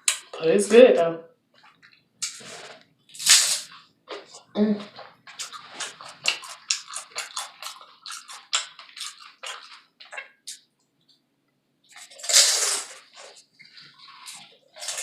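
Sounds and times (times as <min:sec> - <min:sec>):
crunchy wet eating sounds: 0:00.0 - 0:00.8, 0:01.6 - 0:10.7, 0:11.9 - 0:15.0.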